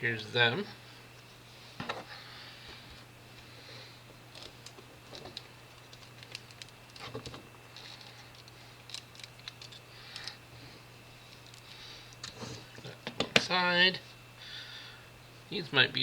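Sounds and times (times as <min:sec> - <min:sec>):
small parts clicking and tapping: 0:04.3 - 0:10.4, 0:11.3 - 0:12.4.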